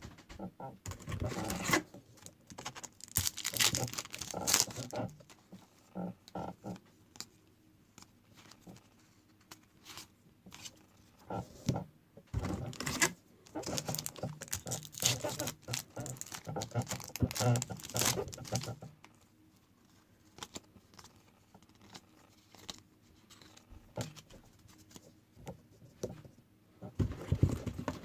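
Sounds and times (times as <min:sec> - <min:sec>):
card pack wrappers tearing: 0:02.5 - 0:05.0, 0:12.7 - 0:18.8.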